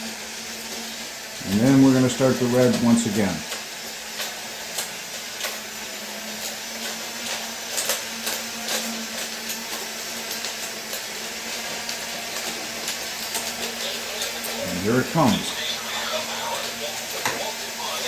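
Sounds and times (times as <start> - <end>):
toy train wheels clicking on track: 0.0 - 18.0.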